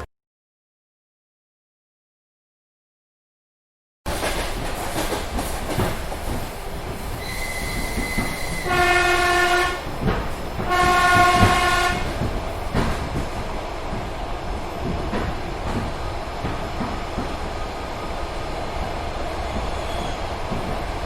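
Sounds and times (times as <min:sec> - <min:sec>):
train rumble and wheel clatter: 0:04.1 - 0:21.0
high wheel squeal: 0:07.2 - 0:08.9, 0:19.5 - 0:20.4
train horn blasts: 0:07.2 - 0:09.9, 0:10.6 - 0:12.2.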